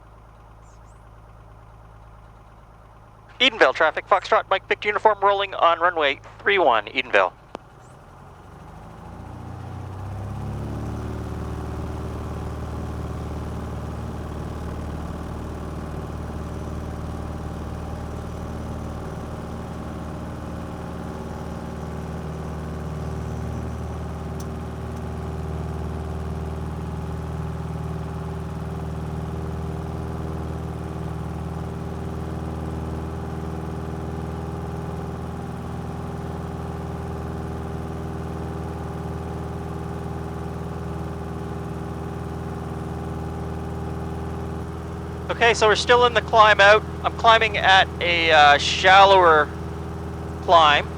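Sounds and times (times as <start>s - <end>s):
propeller plane engine droning: 42.0s - 50.9s.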